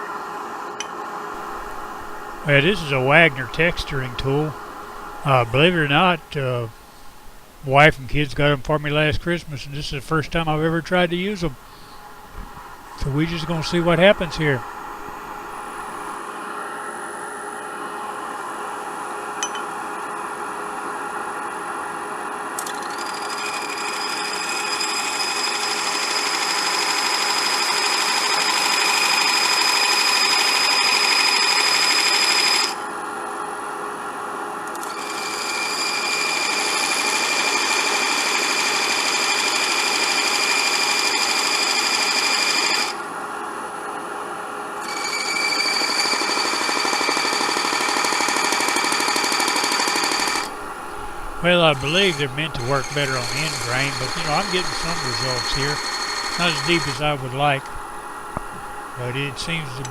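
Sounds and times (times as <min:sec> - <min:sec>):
texturing tool buzzing on wood lathe: 0:01.4 - 0:06.1, 0:22.9 - 0:32.8, 0:34.8 - 0:43.0, 0:44.8 - 0:59.0.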